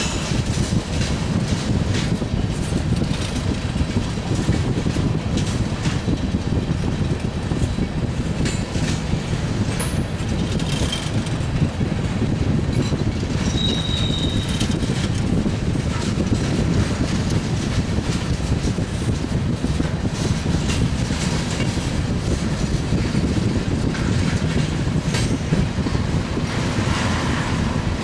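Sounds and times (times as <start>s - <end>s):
freight train rumbling past: 0.0s - 28.0s
wheel clicks over rail joints: 0.0s - 28.0s
high wheel squeal: 13.4s - 14.6s.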